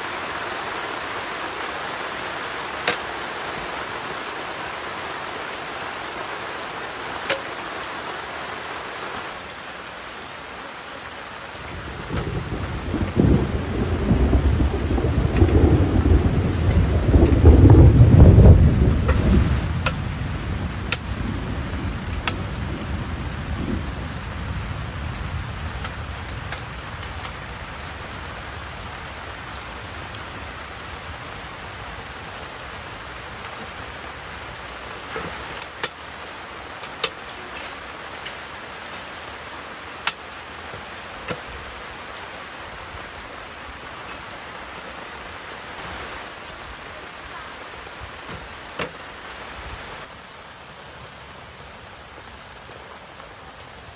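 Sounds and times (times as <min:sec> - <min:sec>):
steady rain falling: 0:00.0 - 0:53.9
thunder rolling: 0:11.6 - 0:33.5.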